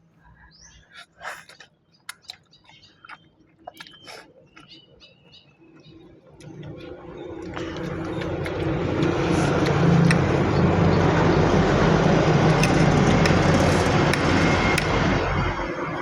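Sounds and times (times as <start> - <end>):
vehicle passing by: 6.6 - 16.0.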